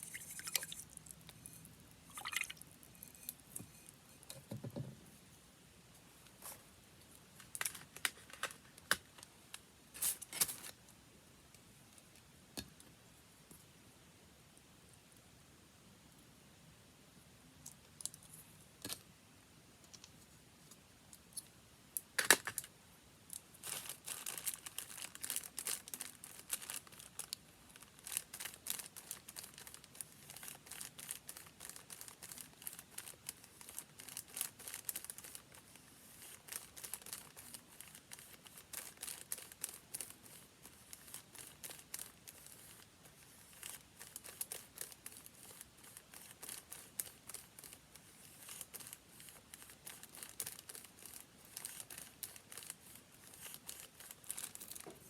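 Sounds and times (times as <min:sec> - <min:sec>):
paper crinkling and rustling: 0:10.0 - 0:10.8, 0:23.6 - 0:55.0.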